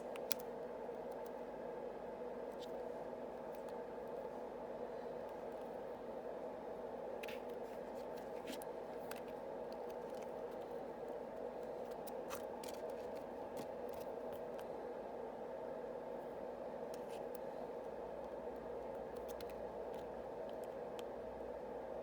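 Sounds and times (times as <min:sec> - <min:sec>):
steady low hum: 0:00.0 - 0:22.0
cards being handled: 0:07.2 - 0:14.6, 0:19.0 - 0:20.7.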